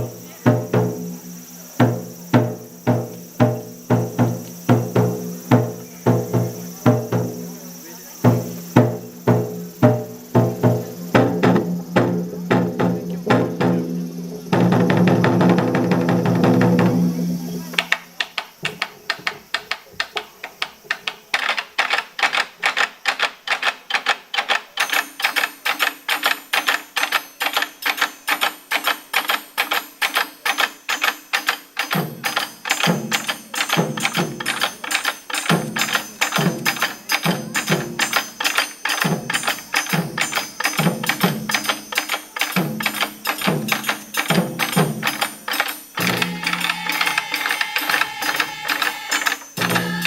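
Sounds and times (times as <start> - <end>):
deep booming drum strokes: 0.0 - 17.4
taiko drums in driving rhythm: 0.0 - 17.9, 24.8 - 50.0.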